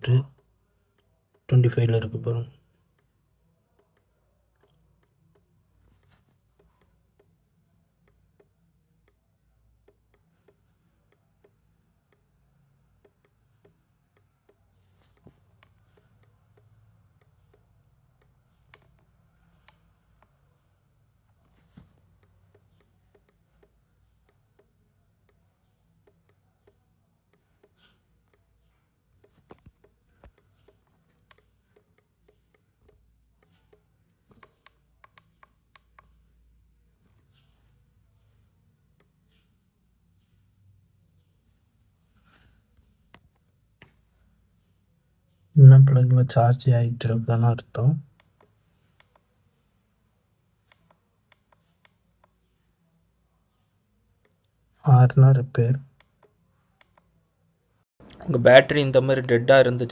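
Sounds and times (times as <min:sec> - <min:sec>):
faint clicks: 0:48.1 - 0:49.3.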